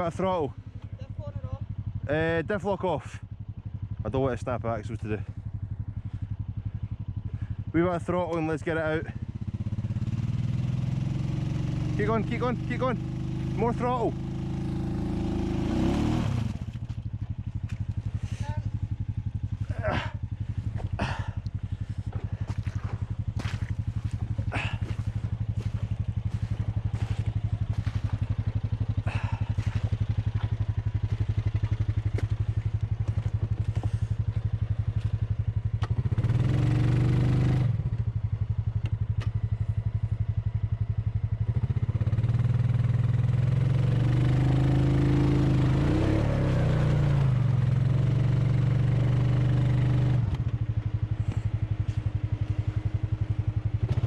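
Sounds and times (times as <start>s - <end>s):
engine idling: 0.0s - 43.7s, 50.2s - 54.0s
engine revving: 8.0s - 17.0s, 17.7s - 34.2s, 35.0s - 38.0s, 41.5s - 50.6s, 53.8s - 54.0s.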